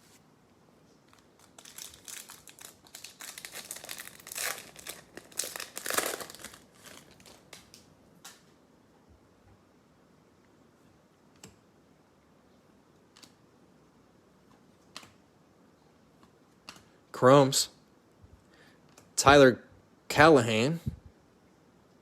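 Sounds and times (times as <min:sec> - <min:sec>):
foil wrapper crinkling: 0:01.1 - 0:08.4.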